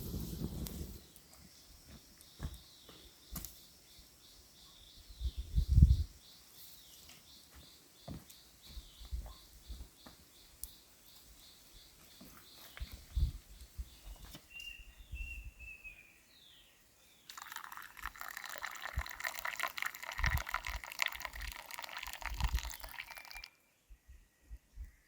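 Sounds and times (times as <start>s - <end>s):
birds chirping: 0.0s - 25.0s
water pouring and splashing: 17.3s - 23.5s.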